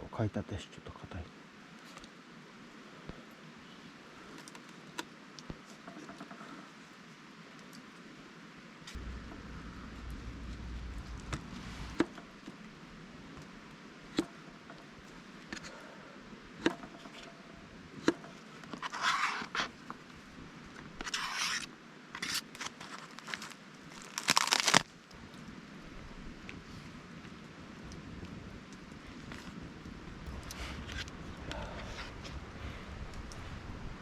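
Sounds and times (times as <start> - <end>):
scraping crinkling bursts: 21.0 - 24.9.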